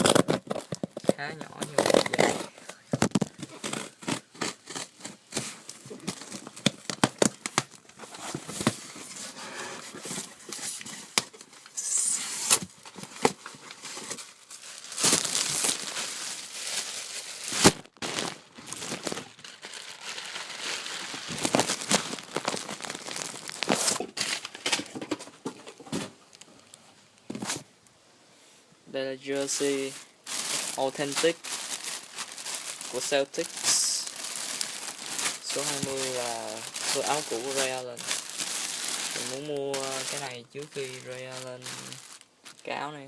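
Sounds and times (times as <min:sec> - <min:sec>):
packaging torn and crinkled: 0:00.0 - 0:08.0, 0:12.0 - 0:24.9, 0:29.4 - 0:42.7.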